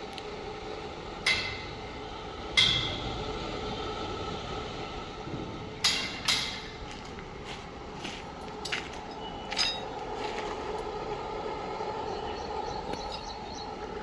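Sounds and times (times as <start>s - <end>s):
machine hum: 0.0s - 14.0s
metal clinks: 8.6s - 10.0s.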